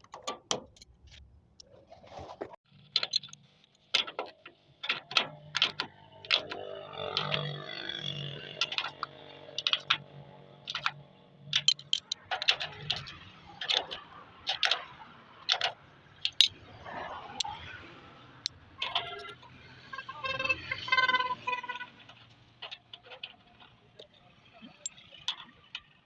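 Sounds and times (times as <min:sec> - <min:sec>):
hand tools clinking on metal: 0:11.5 - 0:14.8.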